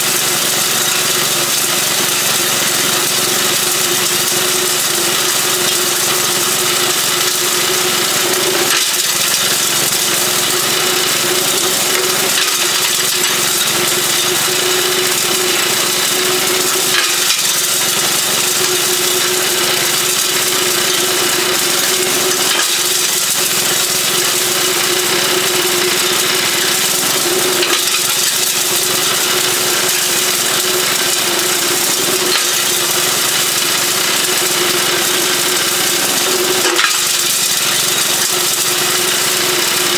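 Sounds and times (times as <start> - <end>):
small engine running: 0.0 - 39.9.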